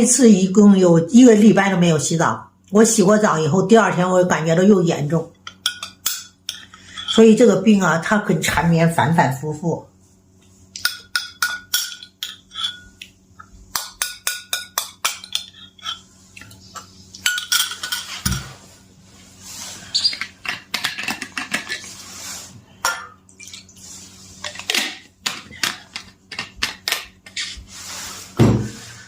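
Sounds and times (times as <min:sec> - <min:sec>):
cutlery clinking against dishes: 0:17.2 - 0:18.5
scraping and rustling: 0:17.7 - 0:20.5, 0:27.3 - 0:29.0.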